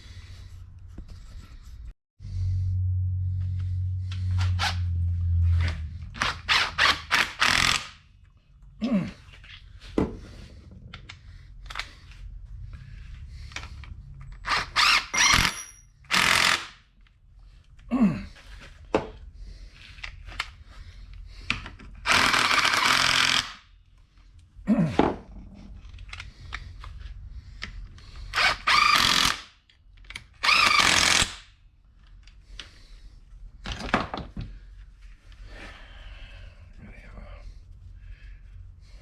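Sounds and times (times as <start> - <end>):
impact wrench bursts: 6.2 - 8.0, 14.4 - 16.8, 22.0 - 23.6, 28.3 - 29.5, 30.4 - 31.5.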